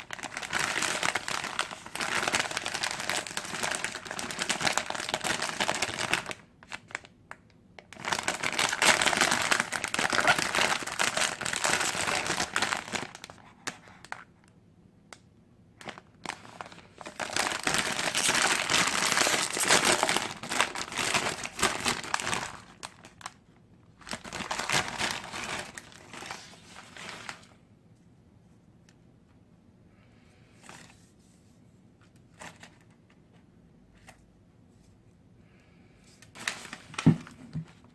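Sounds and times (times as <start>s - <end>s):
plastic packet crinkling: 0.0s - 7.1s, 7.8s - 14.3s, 15.8s - 27.5s, 36.3s - 37.4s.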